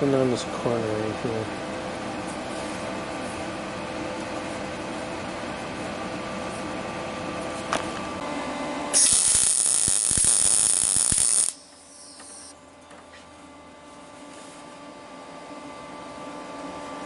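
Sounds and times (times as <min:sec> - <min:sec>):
electric grinder running: 0:09.0 - 0:12.5.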